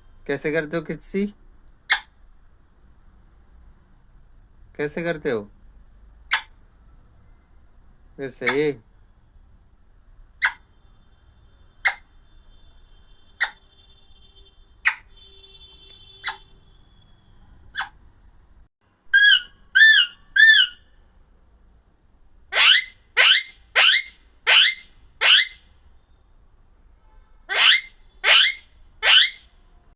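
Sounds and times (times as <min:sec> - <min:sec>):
parakeet calling: 0:01.8 - 0:02.2, 0:06.3 - 0:06.6, 0:10.4 - 0:10.7, 0:11.8 - 0:12.1, 0:13.4 - 0:13.7, 0:14.8 - 0:15.2, 0:16.0 - 0:18.0, 0:19.1 - 0:20.9, 0:22.5 - 0:25.7, 0:27.5 - 0:29.5.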